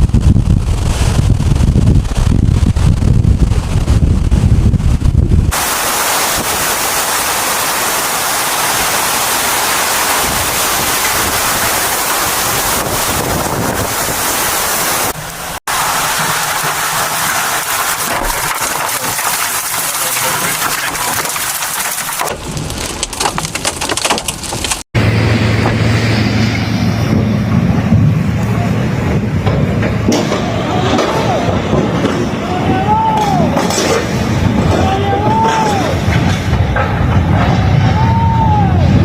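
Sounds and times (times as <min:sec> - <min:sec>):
heavy rain pouring: 0:00.0 - 0:25.2.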